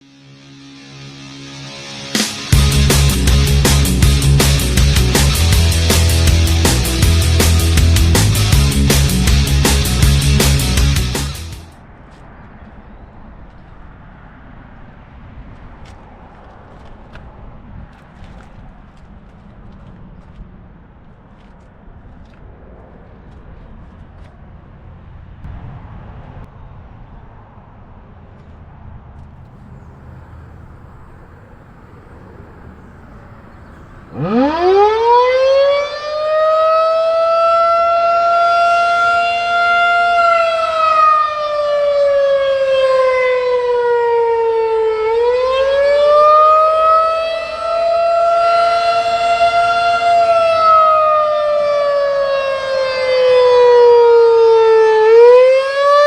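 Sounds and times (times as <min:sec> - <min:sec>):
faint outdoor background noise: 0:11.6 - 0:56.0
warning siren wailing: 0:29.5 - 0:56.0.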